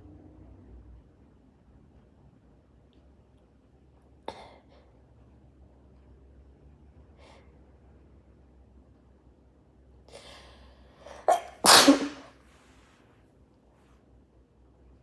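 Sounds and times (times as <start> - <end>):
person sneezing: 11.1 - 12.3.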